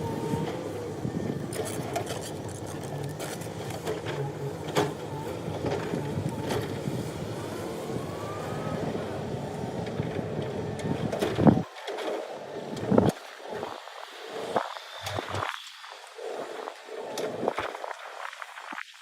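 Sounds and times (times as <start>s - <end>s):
construction machinery engine running: 0.0s - 11.7s.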